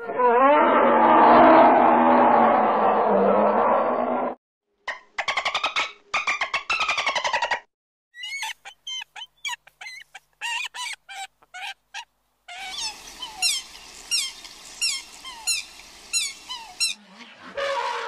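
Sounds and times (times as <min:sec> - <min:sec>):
falling chirps: 0:12.5 - 0:17.0.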